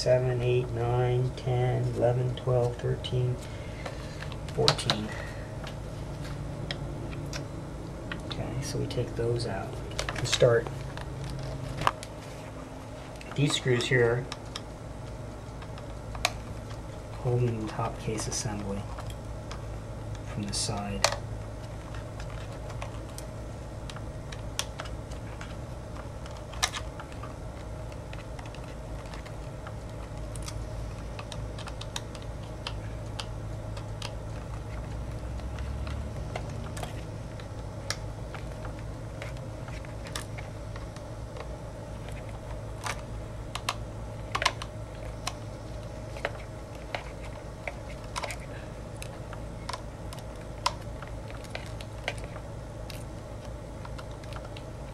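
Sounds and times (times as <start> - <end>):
steady low hum: 0.0 - 54.9
laptop and screws handled: 23.9 - 54.7.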